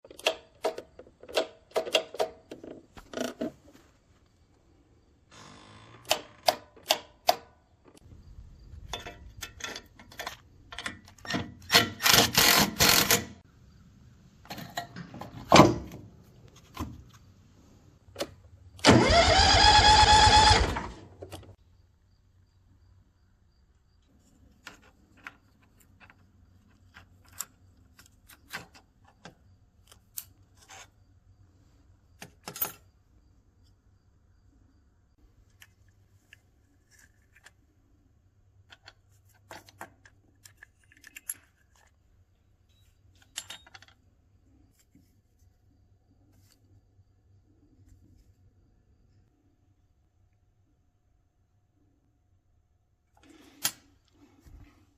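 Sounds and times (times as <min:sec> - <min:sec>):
electric starter motor whirring: 0:18.8 - 0:21.0.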